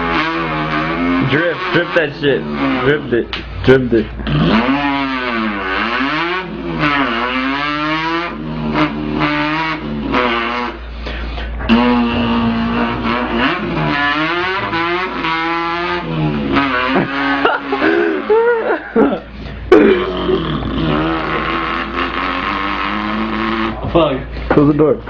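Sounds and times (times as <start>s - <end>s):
man imitating engine revving: 0.0s - 24.2s.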